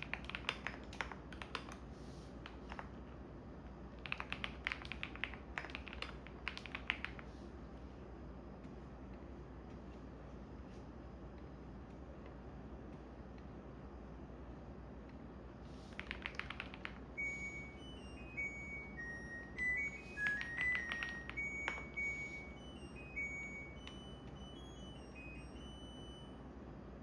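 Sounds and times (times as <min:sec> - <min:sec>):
low steady hum: 0:00.0 - 0:27.0
washing machine beeping melody: 0:17.1 - 0:27.0
clicking bursts: 0:20.1 - 0:22.3.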